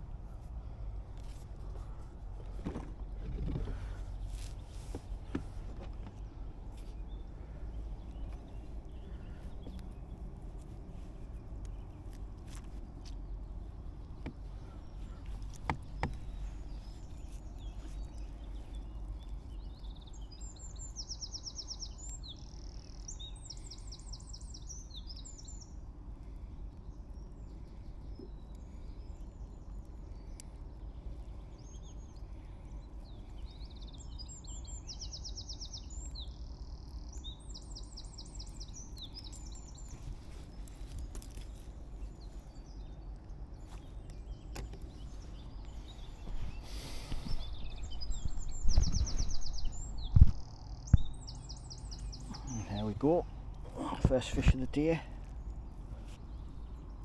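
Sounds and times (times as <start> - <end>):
low background rumble: 0.0 - 57.0
songbird trilling: 43.8 - 55.0.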